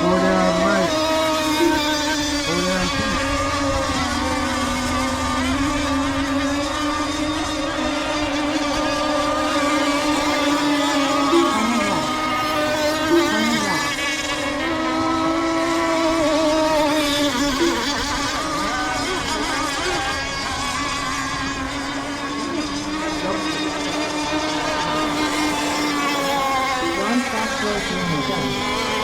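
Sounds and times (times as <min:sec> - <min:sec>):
model boat engines buzzing: 0:00.0 - 0:29.0.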